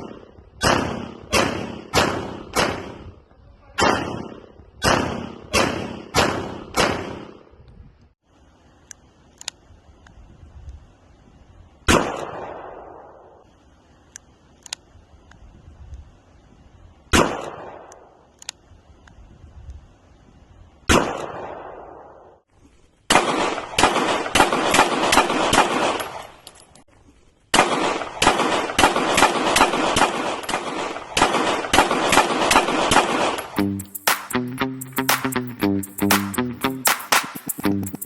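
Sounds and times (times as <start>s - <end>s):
single gunshots with echo: 0.0s - 3.0s, 3.8s - 7.3s, 11.9s - 13.2s
rapid gunfire: 23.1s - 26.0s, 27.6s - 34.3s.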